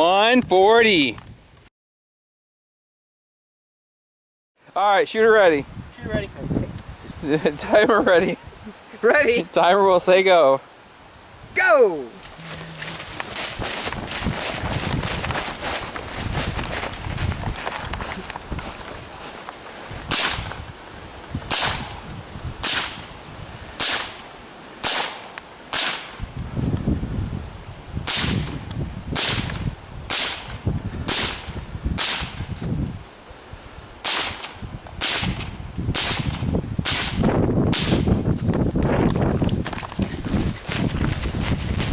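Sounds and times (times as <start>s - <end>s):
rifle shots: 34.0s - 37.2s.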